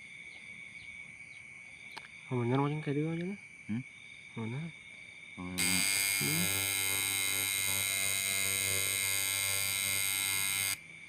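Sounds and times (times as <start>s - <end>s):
tattoo machine buzzing: 5.6s - 10.8s.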